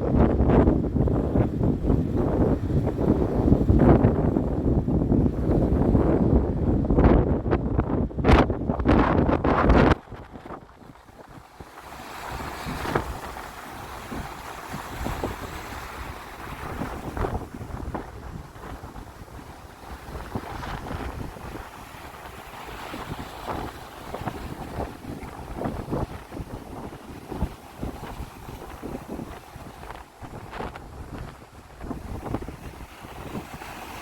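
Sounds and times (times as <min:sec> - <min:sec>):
wind buffeting microphone: 0:00.0 - 0:34.0
sea waves splashing: 0:09.6 - 0:34.0.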